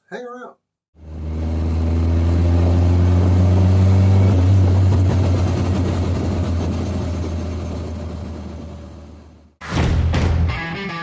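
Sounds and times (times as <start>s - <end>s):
deep engine rumble: 4.4s - 9.5s.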